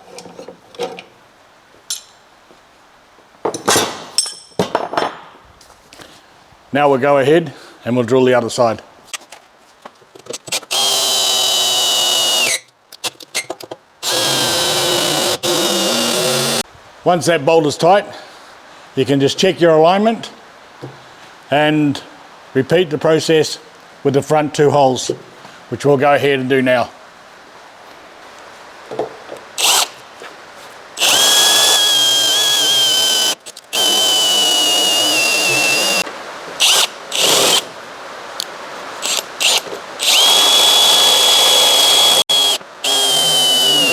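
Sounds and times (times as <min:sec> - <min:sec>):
power drill whine: 0:10.7 - 0:12.7, 0:14.0 - 0:16.6, 0:29.6 - 0:29.9, 0:31.0 - 0:36.0, 0:39.0 - 0:43.9.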